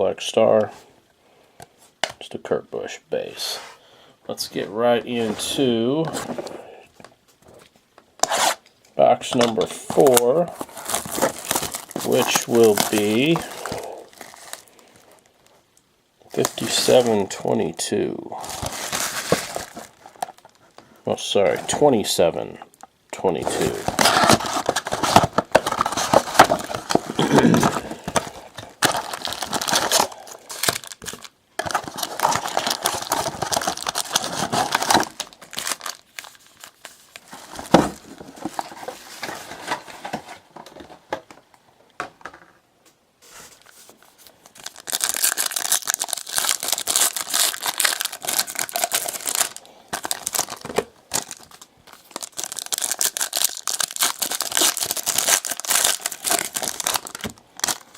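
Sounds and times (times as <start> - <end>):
wrappers tearing and crinkling: 8.2 - 8.6, 9.4 - 15.2, 16.3 - 17.4, 18.4 - 20.7, 23.3 - 39.8, 43.6 - 57.9.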